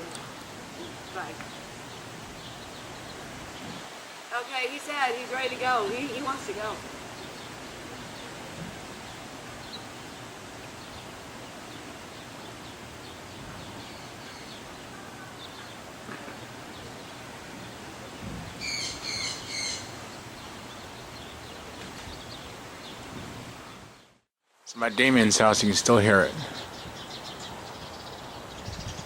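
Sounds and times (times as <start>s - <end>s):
outdoor background noise: 0.0s - 29.0s
faint low thump: 18.2s - 18.6s
faint bird chirps: 18.6s - 23.0s
loud harsh bird calls: 18.6s - 23.0s.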